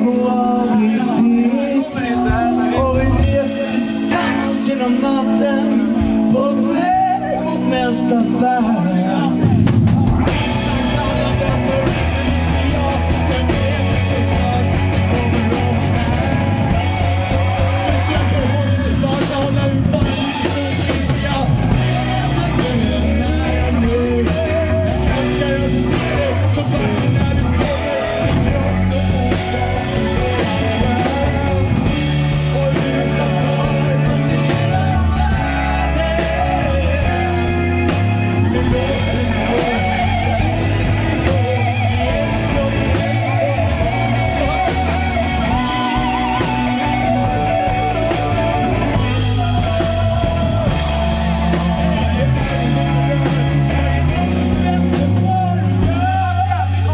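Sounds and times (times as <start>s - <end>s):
wavering lead melody: 0.0s - 56.8s
drum kit and bass beat: 0.0s - 56.9s.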